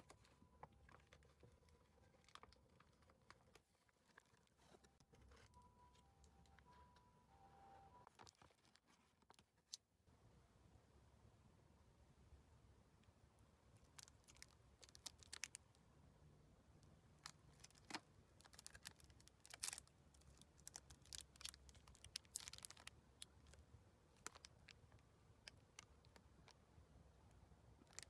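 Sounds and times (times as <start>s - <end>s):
faint clicks and rustles: 0.0s - 7.2s, 7.9s - 9.8s.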